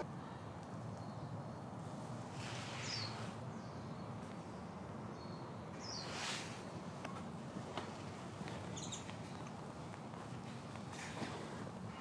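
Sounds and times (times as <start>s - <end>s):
outdoor background noise: 0.0s - 12.0s.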